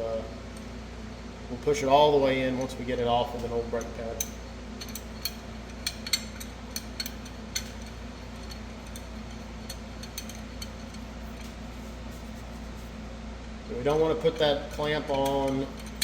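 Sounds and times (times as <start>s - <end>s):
metal clamp clicking: 3.8s - 11.5s.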